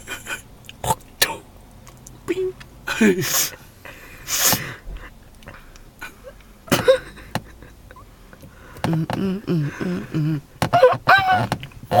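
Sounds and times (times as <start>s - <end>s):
woman making weird vocal noises: 8.9s - 12.0s.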